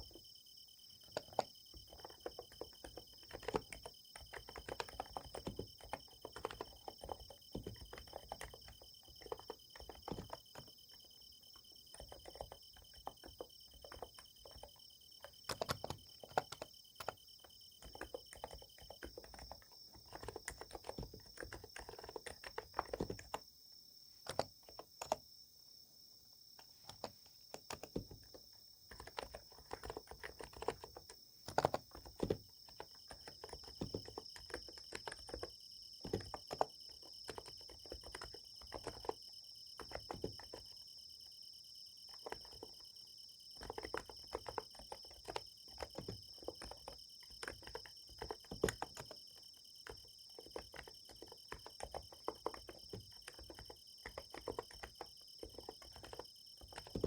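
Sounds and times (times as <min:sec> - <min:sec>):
insects trilling: 0:00.0 - 0:57.0.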